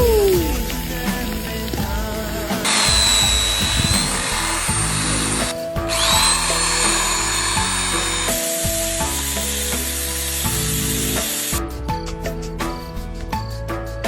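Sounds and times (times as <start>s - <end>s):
background music: 0.0s - 14.0s
power tool motor whining: 2.5s - 11.6s.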